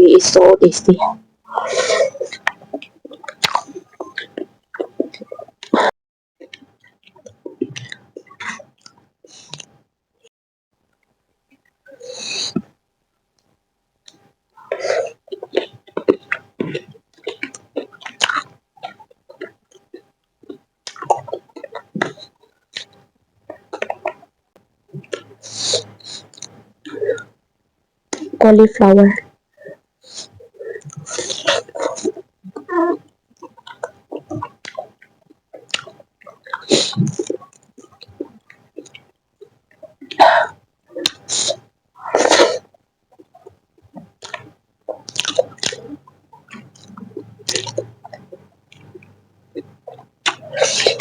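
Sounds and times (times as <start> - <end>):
person chewing food: 14.6 - 24.2, 29.6 - 42.6, 43.2 - 51.0
chewing with wet mouth clicks: 33.4 - 39.0.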